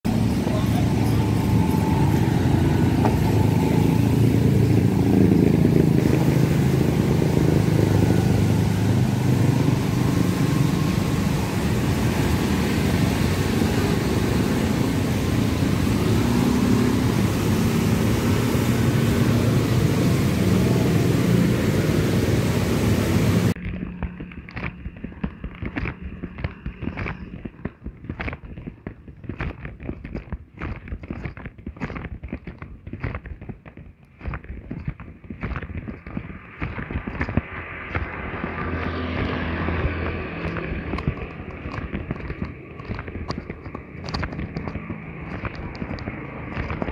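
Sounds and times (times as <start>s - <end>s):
motorcycle engine running: 0.0s - 46.9s
street noise: 0.0s - 46.9s.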